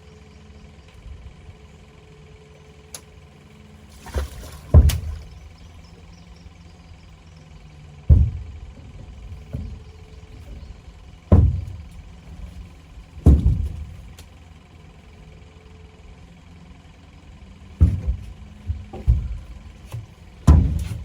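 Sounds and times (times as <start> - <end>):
dull low thumps: 4.0 - 14.2, 17.6 - 21.0.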